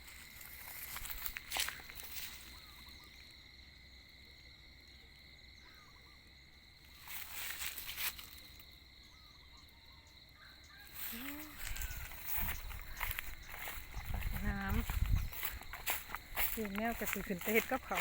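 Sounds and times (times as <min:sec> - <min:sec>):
high-pitched insect trill: 0:00.0 - 0:18.0.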